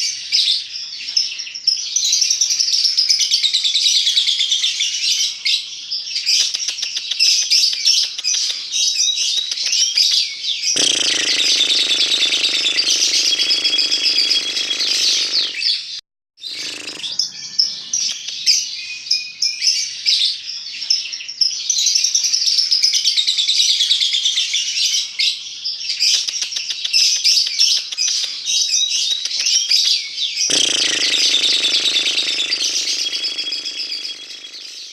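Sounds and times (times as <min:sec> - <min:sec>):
bird chattering and trilling: 0:06.3 - 0:15.8, 0:16.4 - 0:18.7, 0:26.0 - 0:34.9
low drone: 0:30.5 - 0:34.9.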